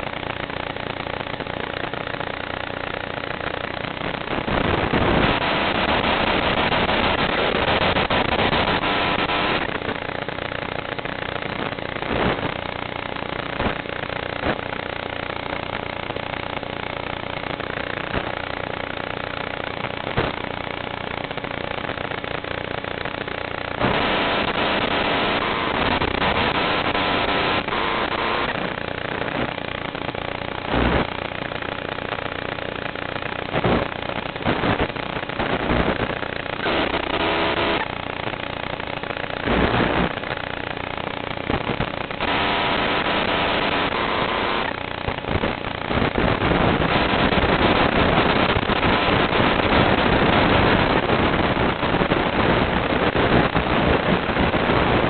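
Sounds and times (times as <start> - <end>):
crackling: 0.0 - 55.0
radio hiss and static: 0.0 - 55.0
faint buzz: 22.2 - 32.3, 32.9 - 51.1.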